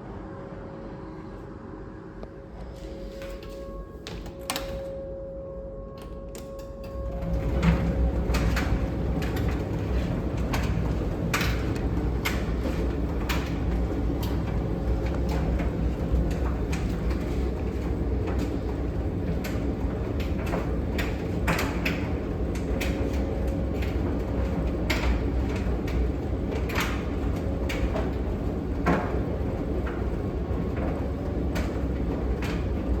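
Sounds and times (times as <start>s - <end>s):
tumble dryer drum rumbling: 6.5s - 33.0s
laundry tumbling clicks and knocks: 7.2s - 33.0s.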